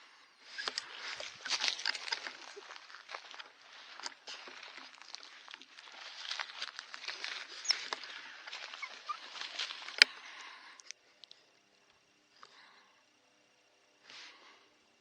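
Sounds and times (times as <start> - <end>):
dry leaves crackling and rustling: 0.8 - 10.0.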